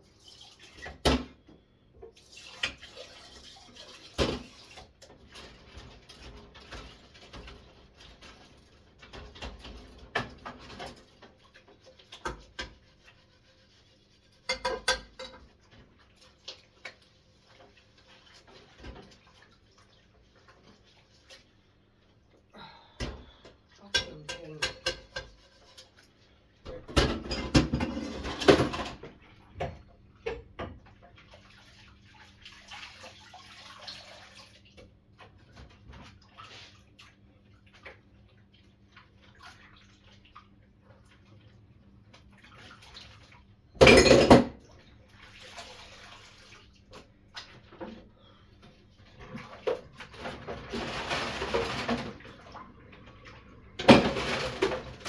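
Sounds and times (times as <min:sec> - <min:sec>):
tap water running: 0:00.0 - 0:22.4, 0:23.0 - 0:55.0
dishes and cutlery clinking: 0:14.5 - 0:15.5, 0:23.8 - 0:25.9, 0:43.8 - 0:44.5.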